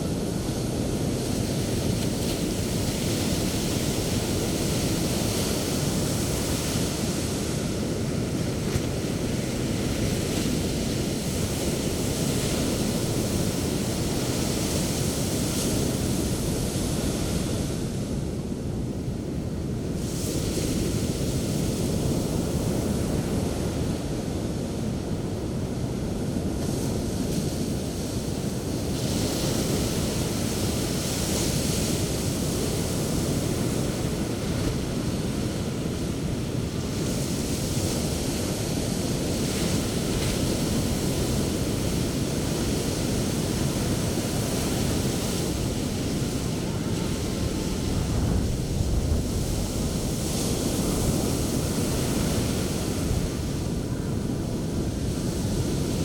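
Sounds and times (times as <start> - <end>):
wind buffeting microphone: 42.8 - 56.0.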